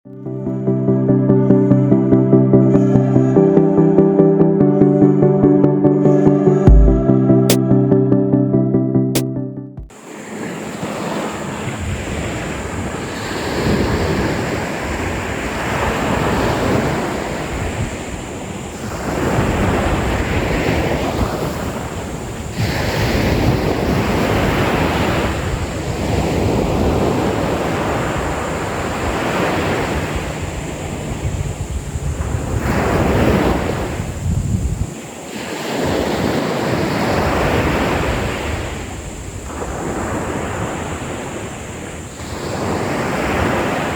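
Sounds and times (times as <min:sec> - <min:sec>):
ocean waves breaking on beach: 0:09.9 - 0:43.9
wind rumble on microphone: 0:10.8 - 0:43.9.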